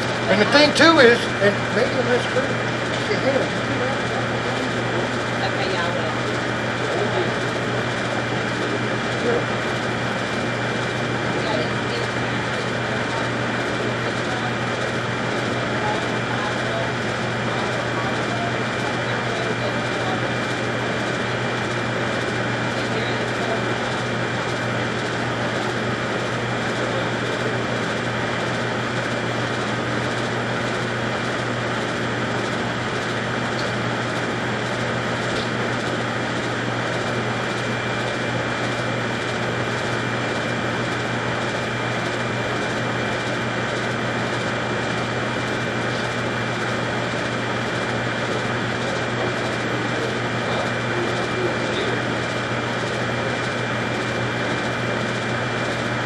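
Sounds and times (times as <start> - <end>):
high whine: 0.0 - 5.1
machine hum: 0.0 - 56.0.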